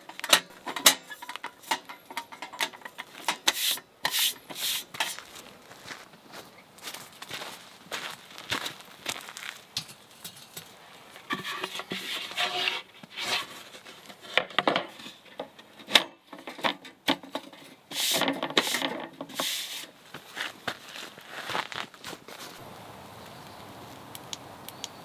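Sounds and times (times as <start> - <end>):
camp gear rustling: 0.0 - 22.8.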